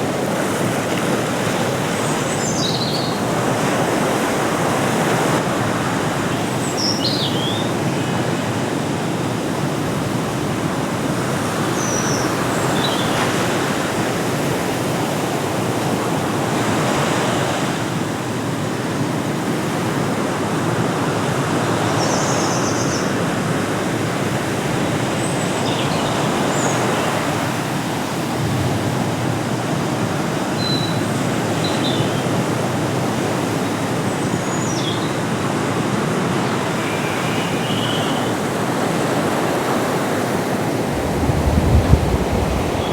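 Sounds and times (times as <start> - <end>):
sea surf rushing: 26.2 - 31.6, 38.2 - 42.9.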